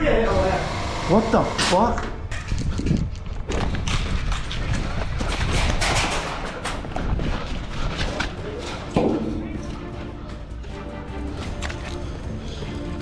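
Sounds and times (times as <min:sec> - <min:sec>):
irregular knocks and thuds: 0:02.4 - 0:11.2.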